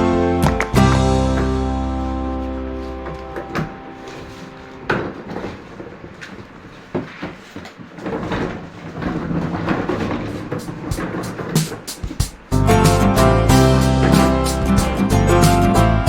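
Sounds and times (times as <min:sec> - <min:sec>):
sharp knocks and clatters: 0:04.9 - 0:13.0.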